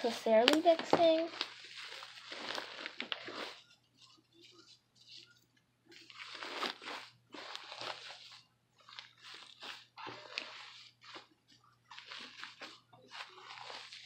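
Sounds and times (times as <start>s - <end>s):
slime squished by hand: 6.0s - 8.3s.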